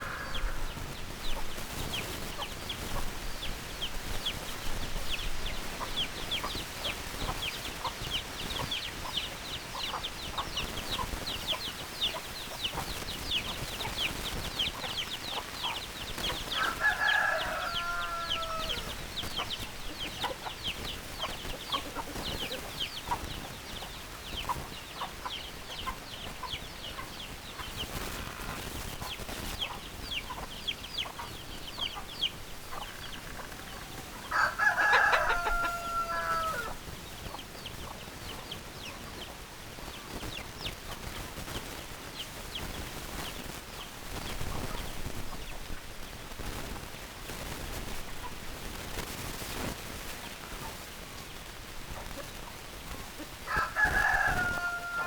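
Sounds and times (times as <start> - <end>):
chicken drawn-out call: 0.0 - 3.1, 14.8 - 23.3, 32.7 - 36.8, 53.1 - 55.0
chickens chirping: 0.0 - 55.0.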